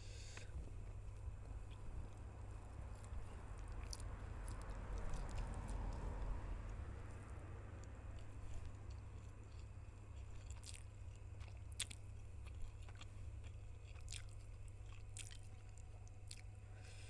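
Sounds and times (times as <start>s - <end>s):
steady low hum: 0.0s - 17.0s
chewing noodles: 0.6s - 17.0s
mouth clicks and crunches: 2.9s - 6.2s, 7.8s - 16.5s.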